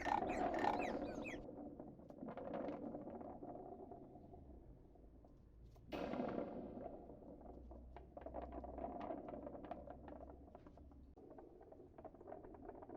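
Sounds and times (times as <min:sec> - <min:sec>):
dense patter of small clicks: 0:07.5 - 0:12.9.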